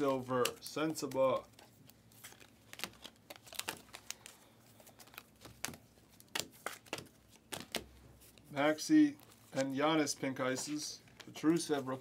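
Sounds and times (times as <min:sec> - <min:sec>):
foil wrapper crinkling: 0:00.0 - 0:07.9
cards clicking and sliding: 0:05.0 - 0:07.9.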